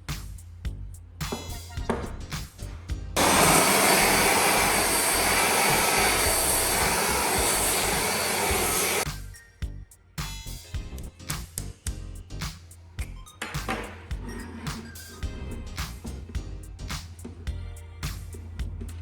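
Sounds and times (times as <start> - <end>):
background music with a beat: 0.0 - 3.2, 9.0 - 19.0
loud steady hissing: 3.2 - 9.1.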